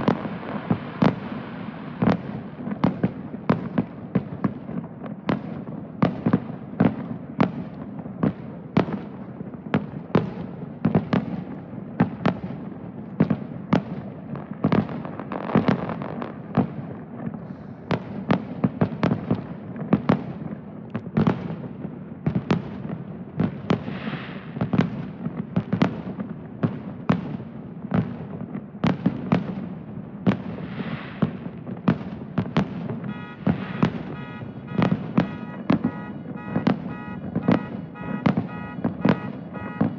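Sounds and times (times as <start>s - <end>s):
firework crackling: 0.0s - 21.8s, 22.4s - 39.9s
firework shell bursts: 32.9s - 39.9s.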